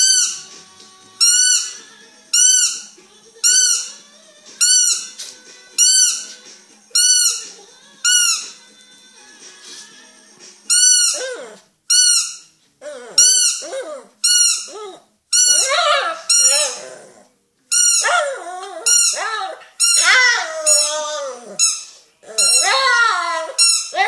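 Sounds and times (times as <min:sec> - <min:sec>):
squeaky dog toy squeaking: 0:00.0 - 0:00.4, 0:01.2 - 0:04.0, 0:04.6 - 0:05.2, 0:05.8 - 0:06.3, 0:07.0 - 0:08.6, 0:10.7 - 0:12.5, 0:13.1 - 0:16.9, 0:17.7 - 0:24.0
dog whining: 0:10.7 - 0:24.0.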